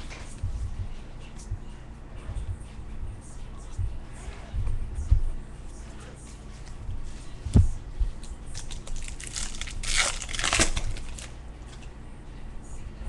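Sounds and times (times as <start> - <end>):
foil wrapper tearing and crinkling: 8.5 - 11.4.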